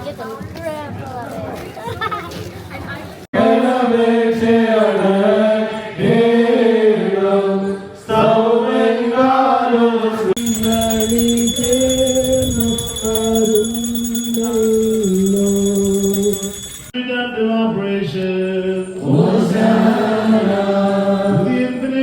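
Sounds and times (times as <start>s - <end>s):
choir singing a slow hymn: 3.4s - 10.4s, 18.5s - 22.0s.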